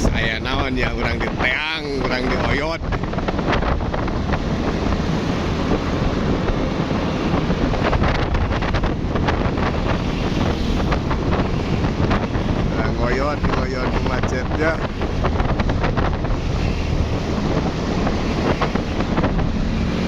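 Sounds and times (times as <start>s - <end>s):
road traffic and engine noise: 0.0s - 20.0s
wind buffeting microphone: 0.0s - 20.0s.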